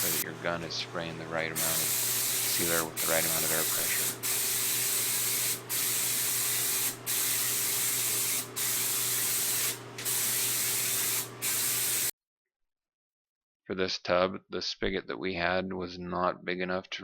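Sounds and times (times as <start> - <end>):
spray gun hissing: 0.0 - 0.2, 1.6 - 12.1.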